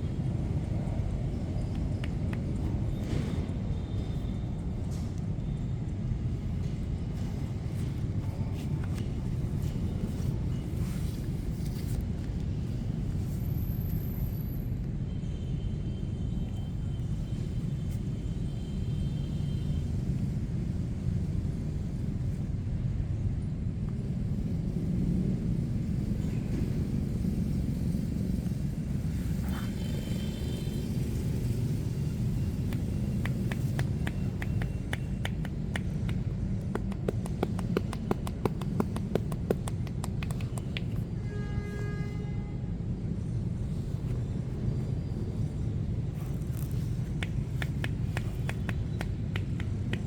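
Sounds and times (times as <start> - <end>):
low rumble of street traffic: 0.0 - 50.0
fast sharp clicks or taps: 32.6 - 41.0, 46.7 - 50.0.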